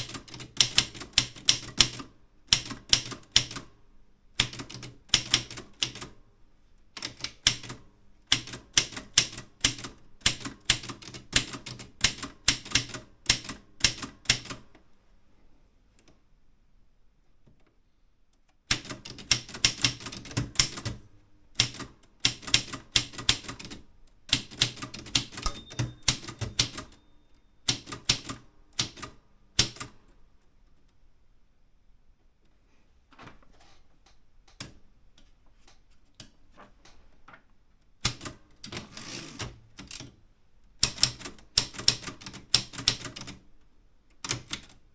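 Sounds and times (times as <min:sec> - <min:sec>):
typewriter keys clacking: 0:24.4 - 0:27.0
brief high ringing tone: 0:25.4 - 0:27.1.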